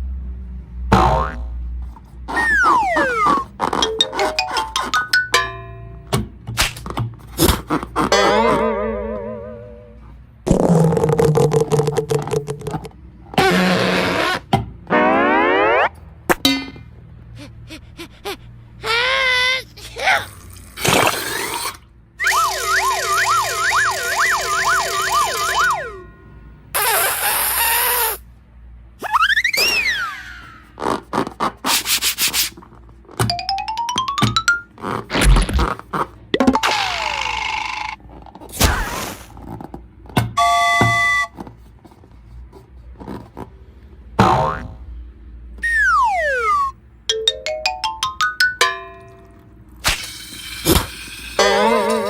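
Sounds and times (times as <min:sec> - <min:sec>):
two-tone siren: 0:02.3 - 0:03.5, 0:14.9 - 0:16.0, 0:22.2 - 0:26.2, 0:40.4 - 0:41.4, 0:45.6 - 0:46.8.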